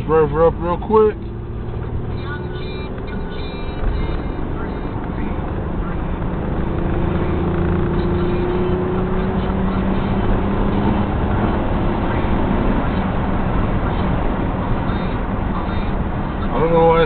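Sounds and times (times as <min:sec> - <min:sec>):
car engine revving: 0:00.0 - 0:17.0.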